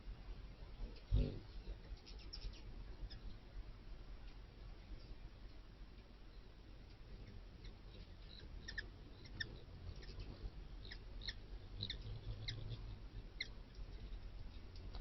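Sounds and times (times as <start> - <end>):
steady low hum: 0.0 - 15.0
small animal chirps: 2.0 - 3.3, 7.2 - 14.6.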